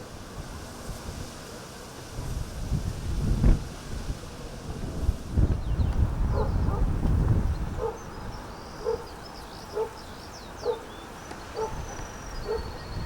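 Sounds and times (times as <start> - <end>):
wind buffeting microphone: 0.0 - 13.0
dog barking: 6.3 - 6.9, 7.8 - 8.1, 8.8 - 9.1, 9.7 - 10.0, 10.6 - 10.9, 11.6 - 11.8, 12.5 - 12.7.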